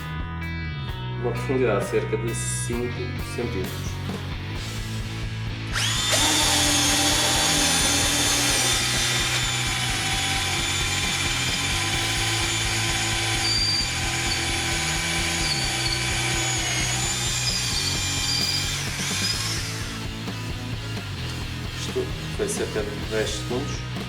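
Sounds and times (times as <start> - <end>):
cordless drill boring: 5.7 - 21.4.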